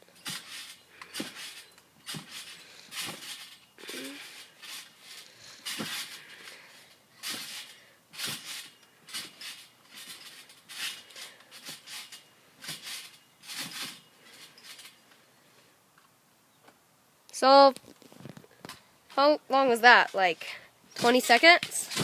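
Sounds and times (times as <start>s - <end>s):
trampoline bounces swishing: 0.0s - 15.0s, 19.9s - 22.0s.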